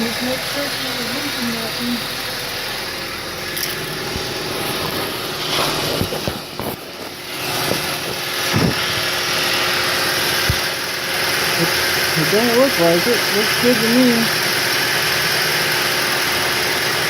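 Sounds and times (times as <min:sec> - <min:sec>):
car engine idling: 0:00.0 - 0:17.0
knocks and clunks: 0:05.8 - 0:08.9.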